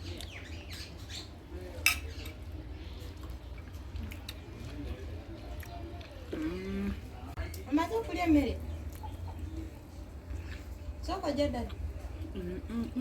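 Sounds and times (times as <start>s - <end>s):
faint voices: 0.0s - 13.0s
cutlery clinking on a plate: 1.8s - 2.4s.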